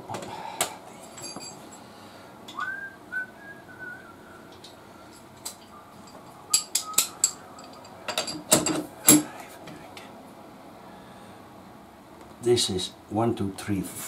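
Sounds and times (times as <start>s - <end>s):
person whistling: 2.5s - 4.6s, 6.5s - 7.6s.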